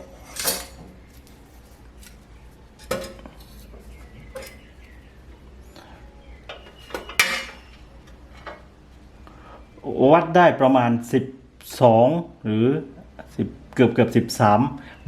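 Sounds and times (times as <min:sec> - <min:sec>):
metal stove parts clinking: 0:00.0 - 0:00.9, 0:02.8 - 0:04.7, 0:06.4 - 0:08.7.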